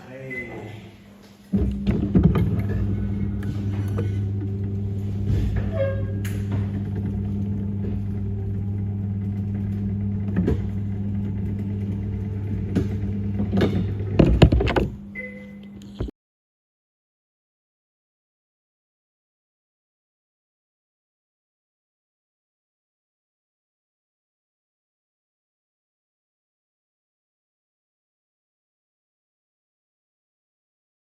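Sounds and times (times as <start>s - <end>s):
loud steady machine hum: 1.5s - 16.1s
scattered knocks and bumps: 12.7s - 15.0s.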